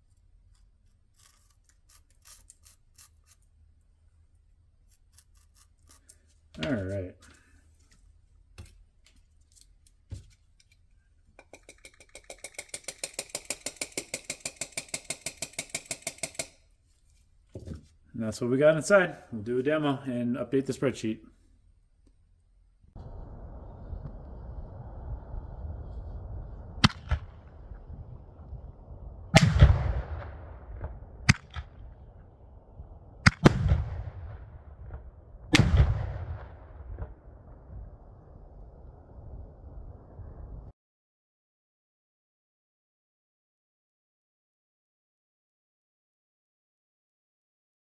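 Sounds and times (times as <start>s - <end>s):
fast mechanical clicking: 11.4s - 16.6s
firework cracks: 23.0s - 38.6s
firework shell bangs: 26.8s - 27.8s, 29.3s - 32.3s, 33.2s - 37.2s.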